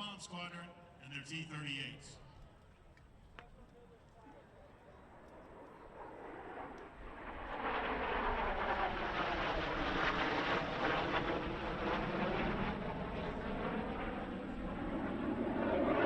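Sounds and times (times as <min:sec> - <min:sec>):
jet aircraft passing low: 0:04.4 - 0:16.0.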